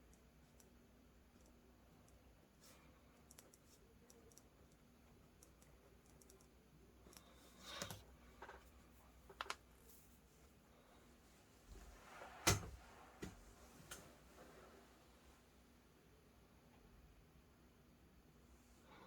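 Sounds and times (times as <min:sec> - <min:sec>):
faint clicks and taps: 0:00.0 - 0:02.3, 0:03.1 - 0:09.7.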